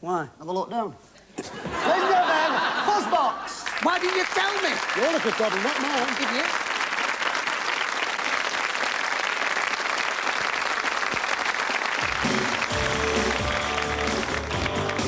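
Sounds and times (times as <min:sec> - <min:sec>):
audience applauding: 0:02.0 - 0:15.0
band music with bass: 0:12.0 - 0:15.0.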